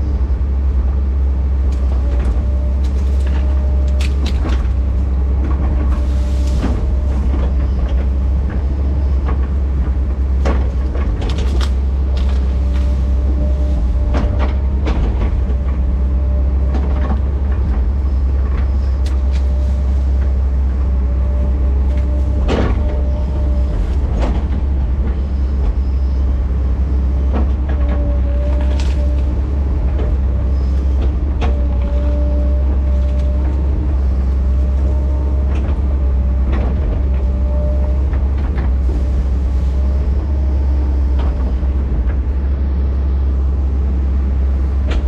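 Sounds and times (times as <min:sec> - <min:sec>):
diesel engine droning: 0:00.0 - 0:45.0.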